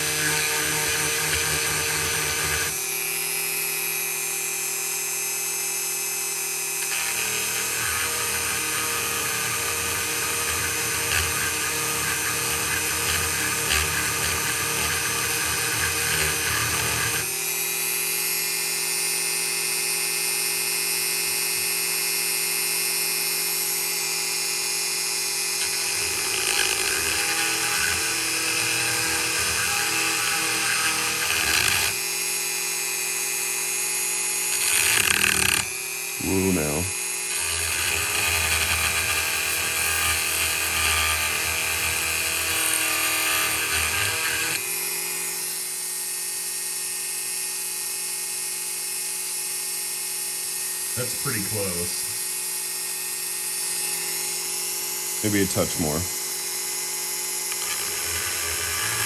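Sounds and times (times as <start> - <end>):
grinding rasp on steel blade: 0.0 - 3.4, 6.8 - 17.3, 25.0 - 32.5, 33.5 - 45.6, 53.5 - 56.0, 57.3 - 59.0
rotary tool high whine: 0.0 - 59.0.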